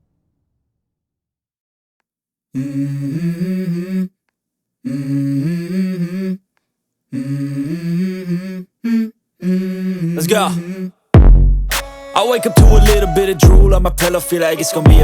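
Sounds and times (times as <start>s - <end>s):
person humming a melody: 11.9s - 15.0s.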